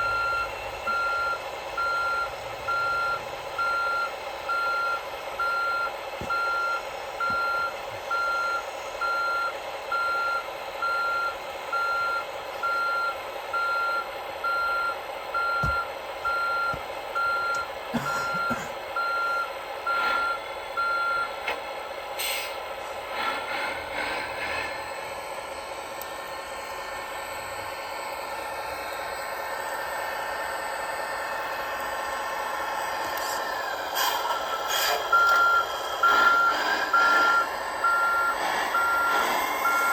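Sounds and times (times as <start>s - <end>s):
reversing beeper: 0.0s - 21.4s, 33.9s - 39.9s
engine hum: 0.0s - 39.9s.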